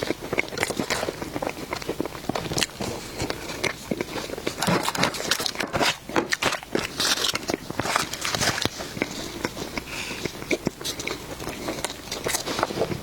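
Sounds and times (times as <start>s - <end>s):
person chewing: 0.0s - 13.0s
mouth clicks and smacks: 5.2s - 13.0s.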